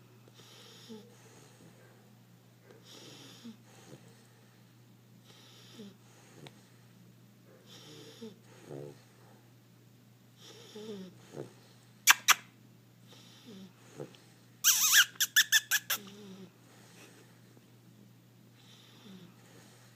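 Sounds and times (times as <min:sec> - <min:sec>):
puppy snoring softly: 0:00.3 - 0:02.1, 0:02.7 - 0:06.8, 0:07.5 - 0:09.5, 0:10.4 - 0:11.9, 0:13.1 - 0:14.4, 0:16.0 - 0:17.3, 0:18.6 - 0:19.9
high-pitched puppy squeaks: 0:12.1 - 0:12.5, 0:14.6 - 0:16.2.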